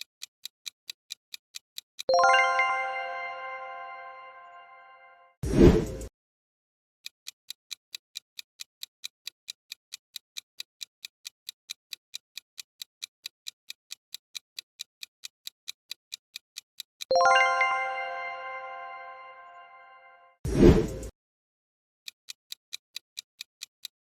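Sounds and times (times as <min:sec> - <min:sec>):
clock-like ticks: 0:00.0 - 0:04.6, 0:07.0 - 0:19.0, 0:22.0 - 0:24.0
bright bell chime: 0:02.1 - 0:05.3, 0:17.1 - 0:20.4.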